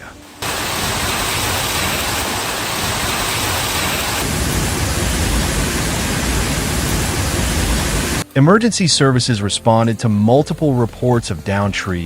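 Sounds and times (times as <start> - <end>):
heavy rain: 0.0 - 8.2
low rumble: 0.4 - 8.2.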